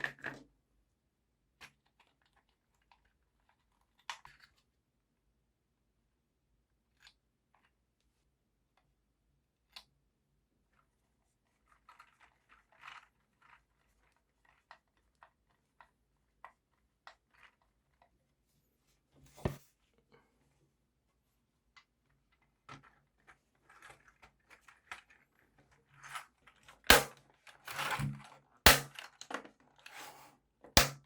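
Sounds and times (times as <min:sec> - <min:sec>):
keyboard parts clicking and tapping: 0:27.9 - 0:29.3.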